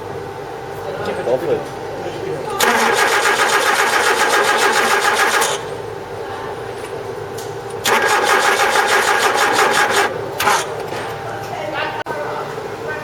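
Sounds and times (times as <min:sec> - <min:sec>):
starter motor cranking engine: 0:02.6 - 0:05.7, 0:07.8 - 0:10.8.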